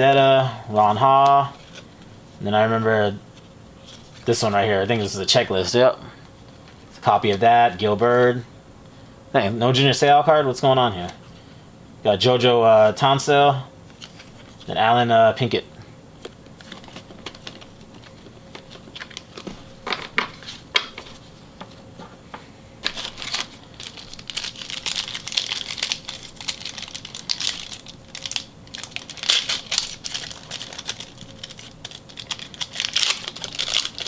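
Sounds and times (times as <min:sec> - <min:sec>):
cards tapping: 0:16.2 - 0:24.0
wrapper crinkling and tearing: 0:16.6 - 0:21.1, 0:22.8 - 0:34.0.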